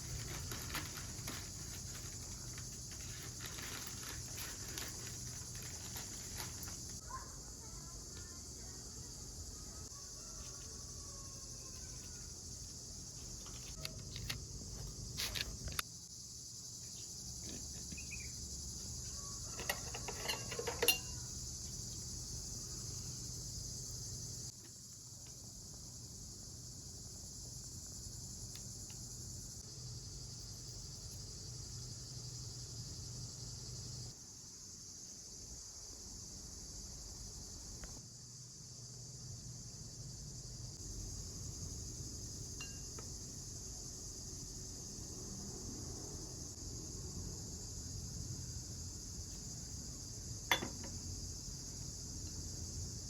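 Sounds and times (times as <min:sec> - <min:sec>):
crickets chirring: 0:00.0 - 0:53.0
short clatters and knocks: 0:19.5 - 0:21.2.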